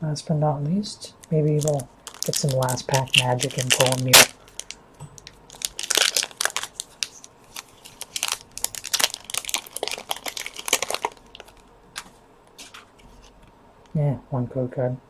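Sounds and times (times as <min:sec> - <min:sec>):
foil wrapper tearing and crinkling: 0:01.2 - 0:11.7.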